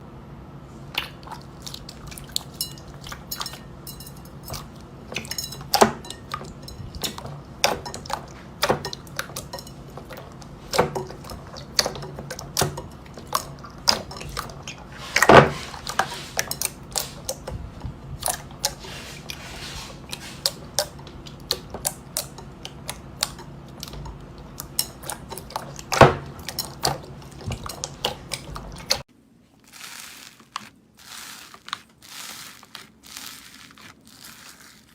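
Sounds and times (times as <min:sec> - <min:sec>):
steady low hum: 0:00.0 - 0:34.9.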